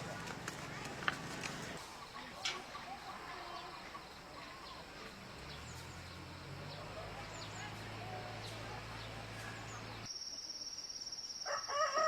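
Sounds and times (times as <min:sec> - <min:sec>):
distant voices: 0:00.0 - 0:10.1
faint bird chirps: 0:09.0 - 0:12.0.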